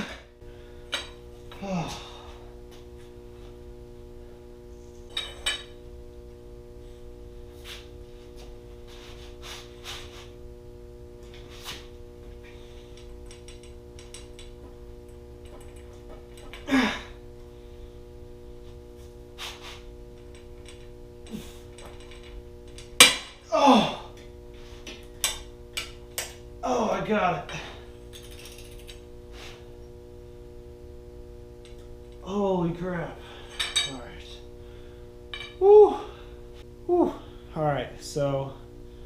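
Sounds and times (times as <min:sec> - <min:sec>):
steady hum: 0:00.0 - 0:39.0
hand tools clicking and clanking: 0:33.4 - 0:34.1.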